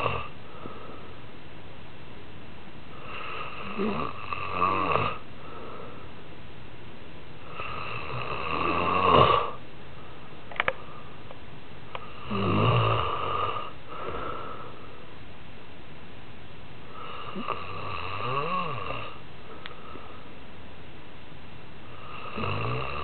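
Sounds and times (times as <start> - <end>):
man snoring: 0.0 - 0.3, 3.0 - 5.2, 7.5 - 9.6, 12.0 - 14.6, 17.0 - 19.2, 22.0 - 23.0.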